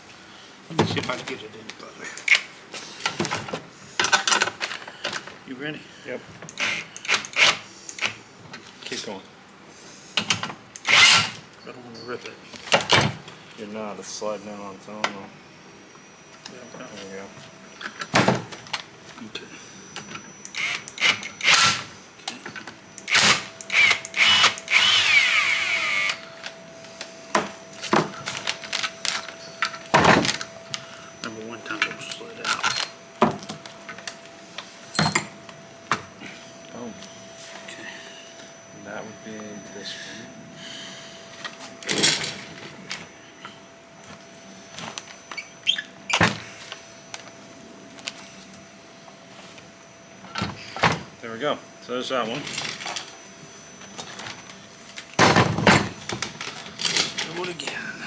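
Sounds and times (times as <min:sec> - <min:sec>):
power drill whining: 0:06.5 - 0:08.2, 0:10.8 - 0:11.5, 0:19.6 - 0:34.1
tools scraping: 0:31.8 - 0:34.0.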